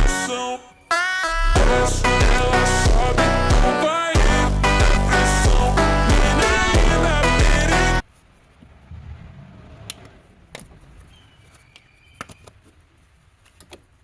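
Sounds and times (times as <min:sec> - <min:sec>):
background music: 0:00.0 - 0:08.0
low rumble: 0:08.5 - 0:11.1.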